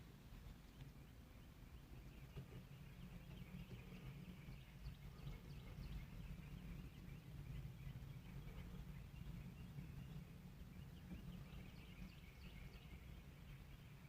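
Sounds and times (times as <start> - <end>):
faint bird chirps: 0.0 - 14.0.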